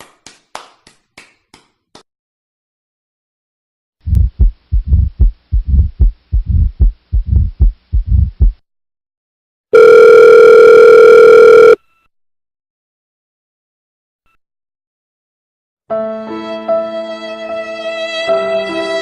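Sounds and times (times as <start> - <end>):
heartbeat thumps: 4.0 - 8.6.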